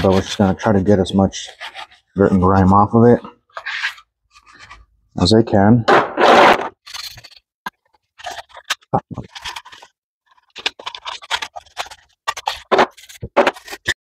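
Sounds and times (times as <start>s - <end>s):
scrubbing pad scraping plastic: 0.0s - 2.8s.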